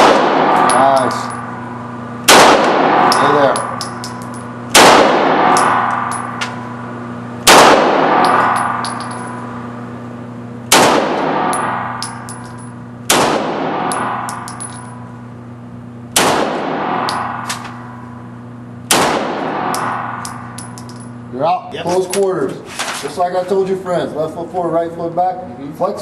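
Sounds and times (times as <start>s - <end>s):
handgun shots echoing: 2.3s - 6.6s, 7.4s - 9.5s, 10.7s - 15.0s, 16.2s - 18.0s, 18.9s - 21.1s.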